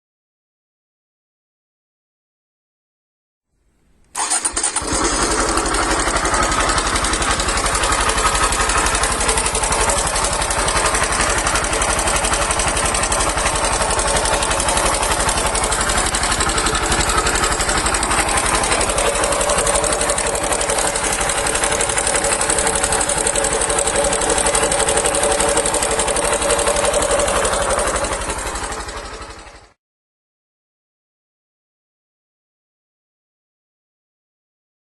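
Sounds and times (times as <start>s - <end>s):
motorcycle engine running: 4.2s - 29.8s.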